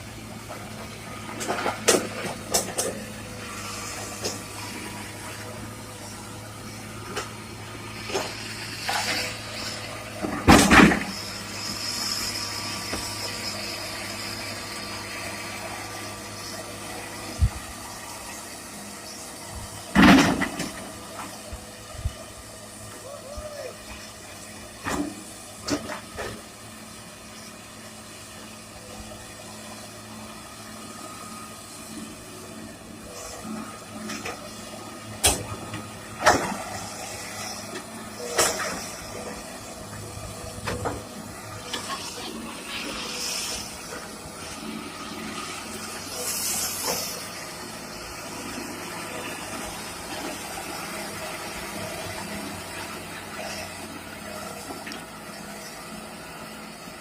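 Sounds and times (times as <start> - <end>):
excavator engine running: 0.0 - 57.0
short bursts of hiss: 46.1 - 47.4.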